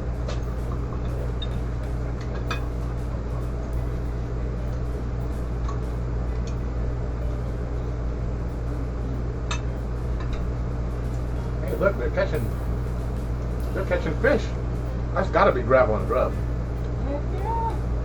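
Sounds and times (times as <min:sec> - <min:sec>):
low mechanical hum: 0:00.0 - 0:18.0.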